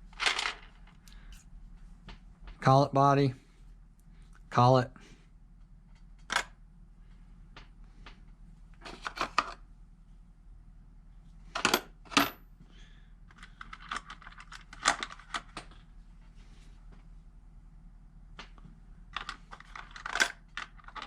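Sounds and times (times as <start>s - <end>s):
small metal parts clinking: 19.2s - 21.0s.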